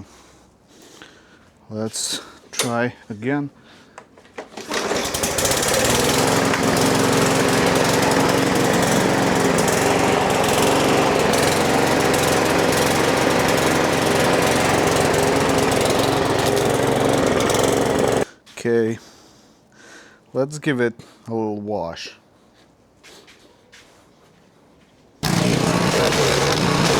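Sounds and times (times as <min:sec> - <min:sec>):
lawn mower engine starting and running: 0:04.4 - 0:18.3, 0:25.2 - 0:26.9.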